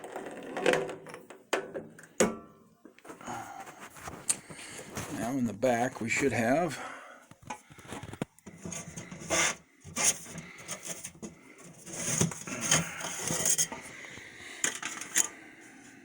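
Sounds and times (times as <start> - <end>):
aluminum sheet scraping on metal: 8.6 - 10.8.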